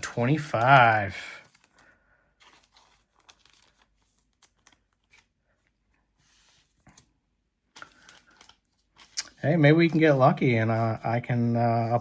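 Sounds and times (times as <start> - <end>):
trading cards clicking and rustling: 0.0 - 5.4, 7.7 - 10.4.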